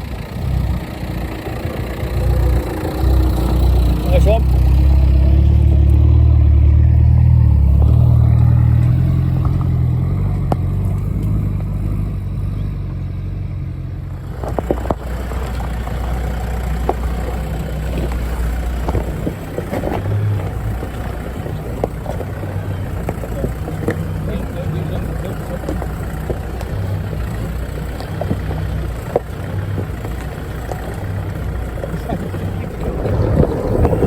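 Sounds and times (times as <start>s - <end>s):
off-road vehicle engine: 0.0s - 34.0s
knocks and rattles: 14.2s - 34.0s.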